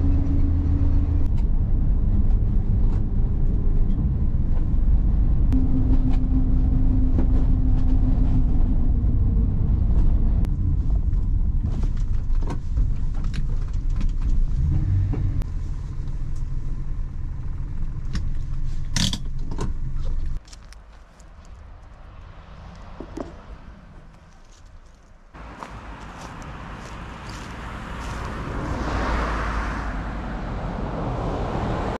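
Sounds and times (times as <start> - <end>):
car engine and road rumble: 0.0 - 31.9.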